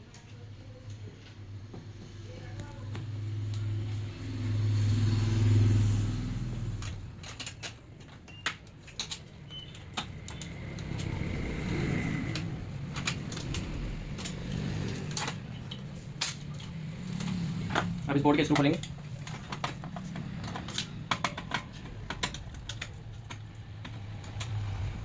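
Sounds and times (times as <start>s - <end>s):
printer parts clicking and knocking: 6.8s - 11.0s, 17.2s - 24.6s
deep rumble: 10.1s - 18.2s.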